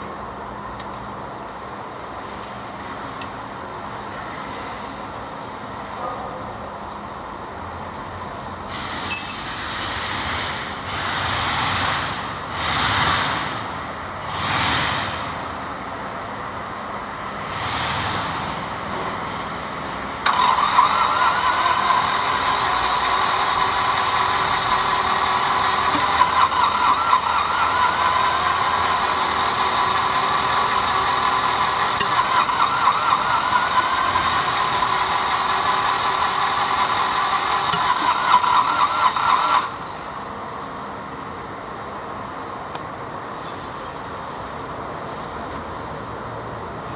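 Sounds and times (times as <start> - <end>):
diesel engine cranking and running: 17.4 - 40.3.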